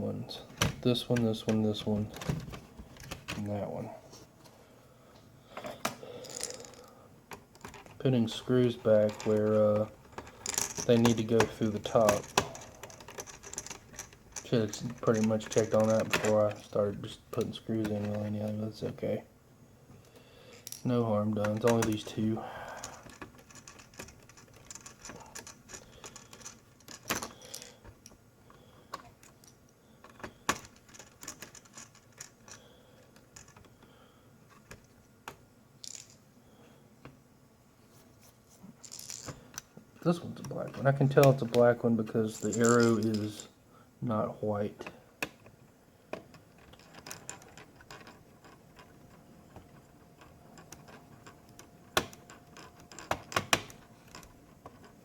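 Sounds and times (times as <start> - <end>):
screws and screwdriver rattling: 7.6 - 16.8, 20.6 - 27.9, 46.4 - 55.0.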